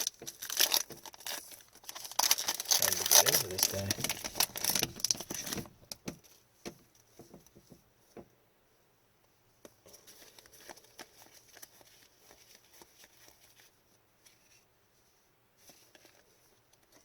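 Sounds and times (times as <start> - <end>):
cards and packaging rustling: 0.0 - 7.3, 9.8 - 14.7, 15.6 - 17.0.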